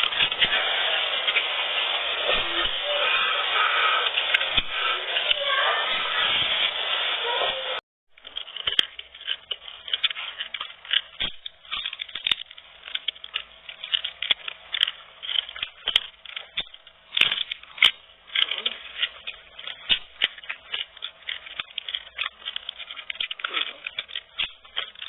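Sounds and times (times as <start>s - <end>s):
crunching and chewing fried food: 8.2s - 25.0s.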